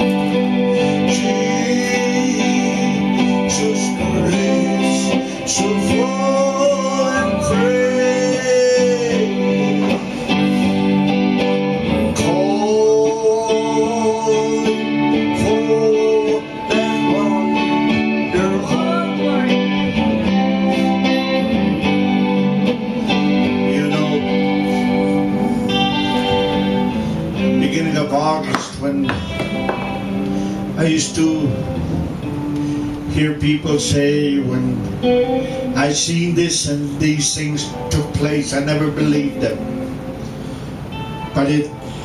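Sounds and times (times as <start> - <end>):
person singing: 0.0 - 26.8, 33.1 - 39.7
guitar-backed song: 0.0 - 42.0.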